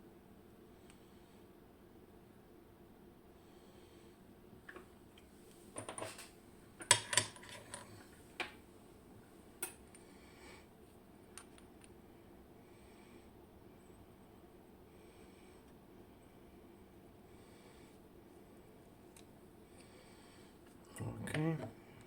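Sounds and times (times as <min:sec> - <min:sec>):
small metal parts clinking: 0:06.8 - 0:07.9.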